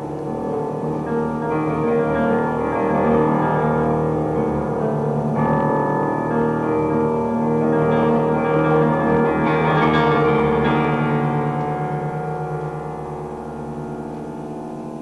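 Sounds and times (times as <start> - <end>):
piano chords: 0.0 - 15.0.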